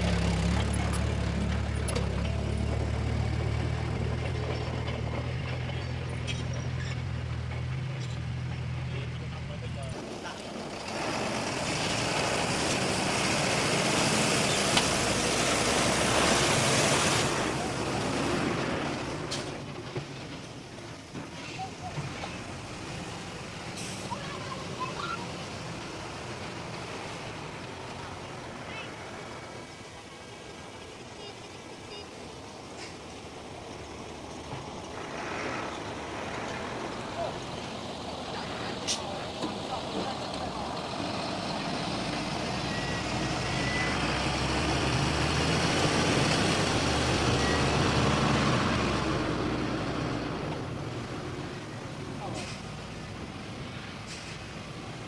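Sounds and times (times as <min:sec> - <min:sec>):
low engine hum: 0:00.0 - 0:31.4, 0:32.2 - 0:55.0
broad rushing noise: 0:09.8 - 0:19.8
faint reversing alarm beeps: 0:31.2 - 0:32.2.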